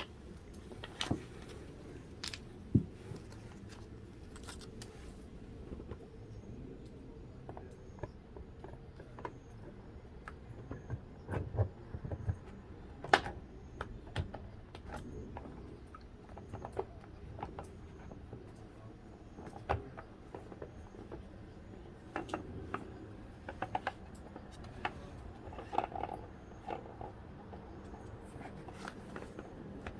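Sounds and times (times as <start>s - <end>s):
clicks and knocks of tools: 0.0s - 5.2s.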